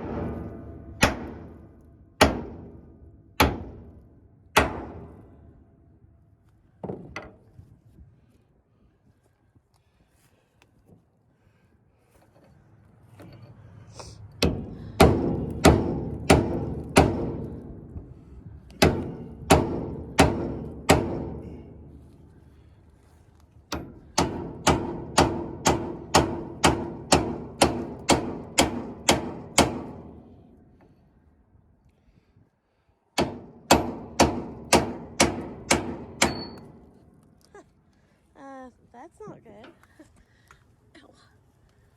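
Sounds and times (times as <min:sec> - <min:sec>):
hammer blows on metal: 0:33.2 - 0:36.8.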